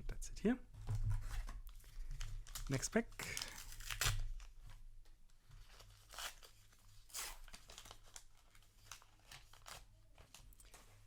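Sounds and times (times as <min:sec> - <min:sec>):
paper pack tearing open: 0:02.4 - 0:04.5, 0:05.8 - 0:09.9.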